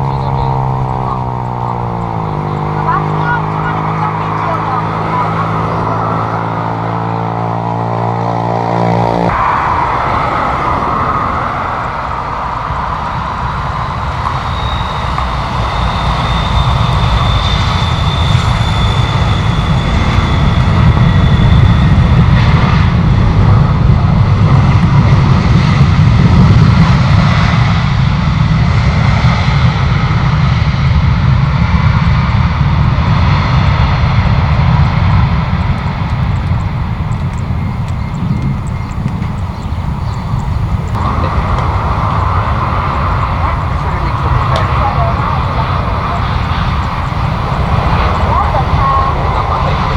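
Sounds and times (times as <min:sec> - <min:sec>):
high engine whine: 0:00.0 - 0:49.9
jet engines rumbling: 0:00.0 - 0:49.9.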